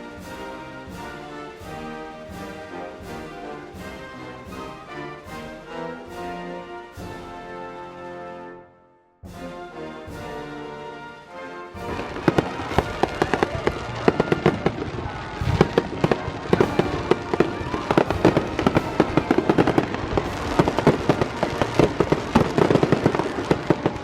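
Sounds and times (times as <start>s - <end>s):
background music: 0.0s - 24.0s
fireworks banging and crackling: 11.8s - 24.0s.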